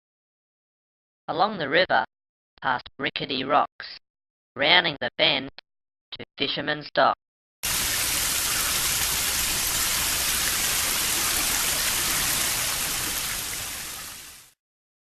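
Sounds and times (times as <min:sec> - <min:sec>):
hiss of rushing water: 0:07.6 - 0:14.5.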